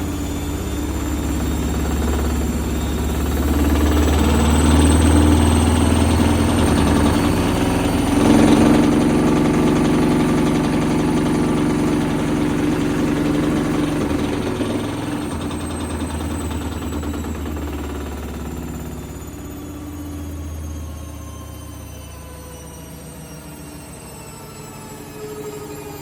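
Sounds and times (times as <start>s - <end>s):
washing machine motor hum: 0.0s - 21.2s
high whine: 0.0s - 26.0s.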